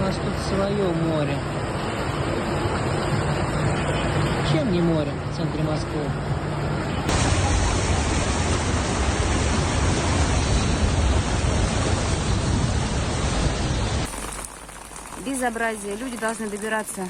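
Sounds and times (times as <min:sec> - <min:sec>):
deep rumble: 0:07.1 - 0:14.3
torrential rain: 0:07.1 - 0:17.0.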